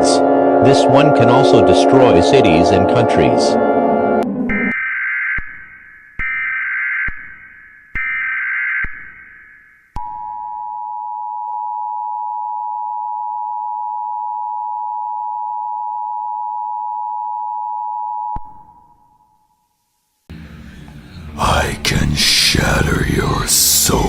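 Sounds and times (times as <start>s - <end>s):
two-tone alarm: 0.0s - 18.4s.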